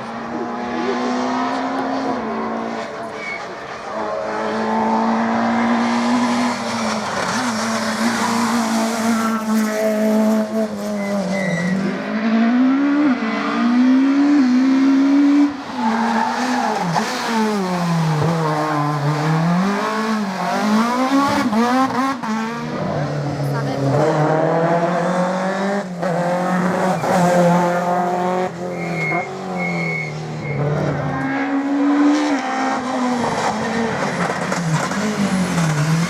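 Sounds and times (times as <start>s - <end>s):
rally car engine revving: 0.0s - 36.0s.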